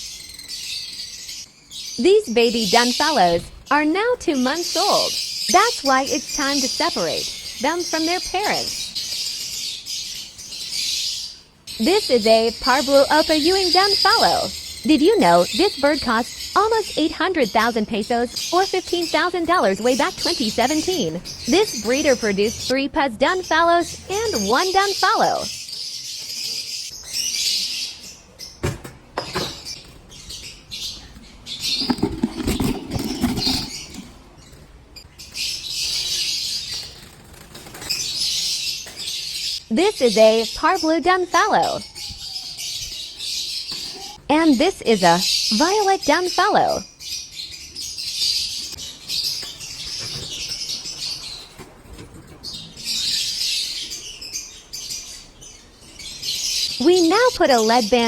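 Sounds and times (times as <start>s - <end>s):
lovebirds chattering and chirping: 0.0s - 58.0s
knocks and rustling: 31.6s - 34.4s.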